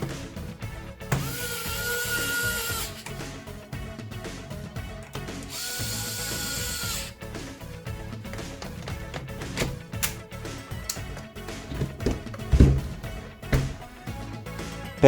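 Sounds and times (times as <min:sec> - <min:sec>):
background music: 0:00.0 - 0:15.0
electric screwdriver whining: 0:01.1 - 0:03.2, 0:05.4 - 0:07.2.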